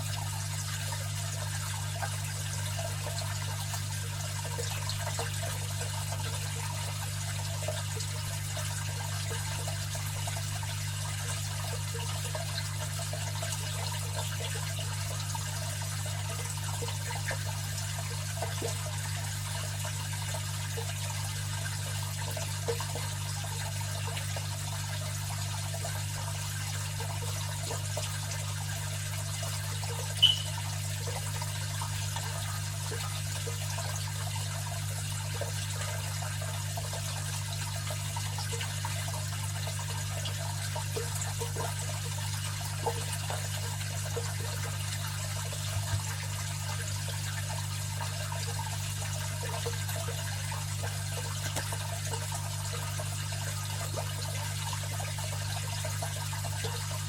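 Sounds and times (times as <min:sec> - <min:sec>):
trickling splashing water: 0:00.0 - 0:57.0
brief high chirp: 0:30.2 - 0:30.6.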